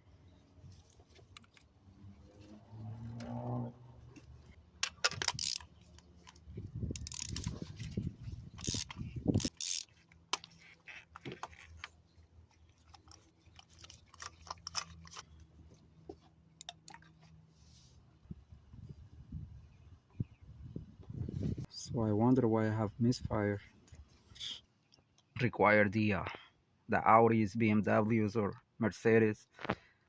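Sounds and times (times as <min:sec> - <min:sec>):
metal hand tools clicking and scraping: 0:04.8 - 0:07.9, 0:08.5 - 0:11.8, 0:12.8 - 0:15.4.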